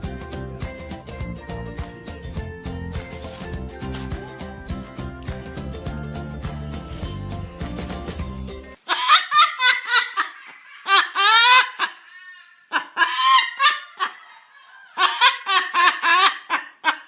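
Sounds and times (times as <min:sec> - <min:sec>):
high-pitched laughter: 0:08.8 - 0:17.0.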